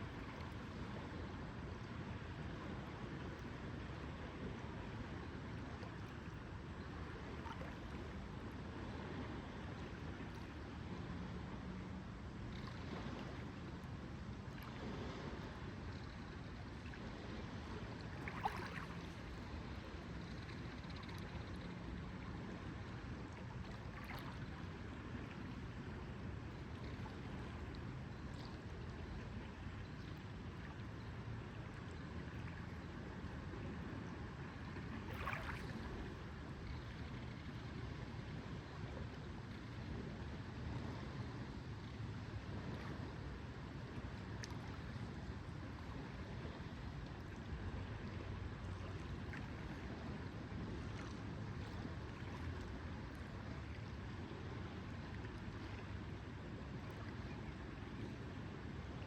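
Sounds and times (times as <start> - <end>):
lake water lapping on shore: 16.6 - 20.2, 22.3 - 26.2, 33.5 - 36.3.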